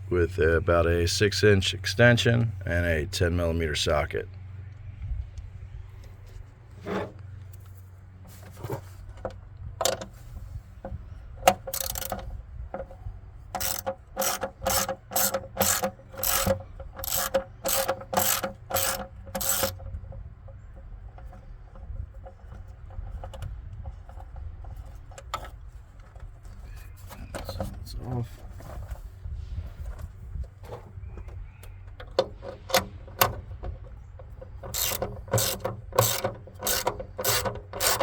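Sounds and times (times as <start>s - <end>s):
tool handling noise: 6.0s - 38.0s
ratchet wrench ratcheting: 11.4s - 12.3s, 13.5s - 19.9s, 34.6s - 38.0s.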